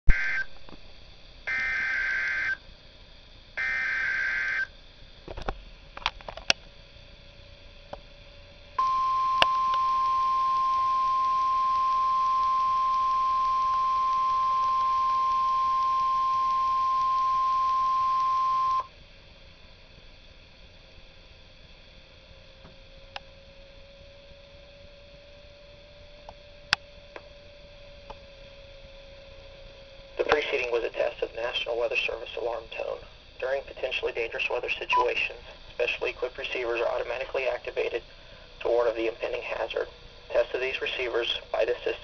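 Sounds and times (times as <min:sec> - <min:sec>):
digital data bursts: 0:00.1 - 0:00.5, 0:01.5 - 0:02.6, 0:03.6 - 0:04.7
warning alarm tone: 0:00.1 - 0:00.5, 0:01.5 - 0:02.6, 0:03.6 - 0:04.7, 0:08.8 - 0:18.9
clicks: 0:08.8 - 0:11.4.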